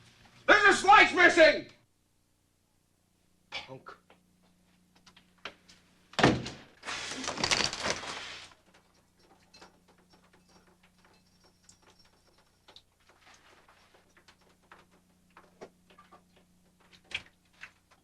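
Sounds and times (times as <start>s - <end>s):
door slamming shut: 6.2s - 6.7s.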